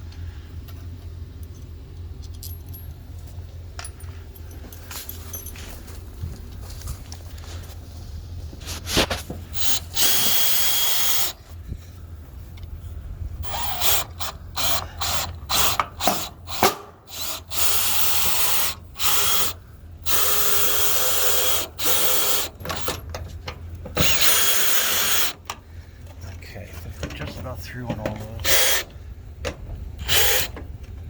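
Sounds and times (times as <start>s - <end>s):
drill trigger pulses: 9.5s - 11.4s, 13.4s - 23.0s, 24.0s - 25.4s, 28.4s - 28.9s, 30.0s - 30.6s
power drill drilling into wall: 9.6s - 11.4s, 13.4s - 23.0s, 24.0s - 25.4s, 28.4s - 28.9s, 30.0s - 30.6s.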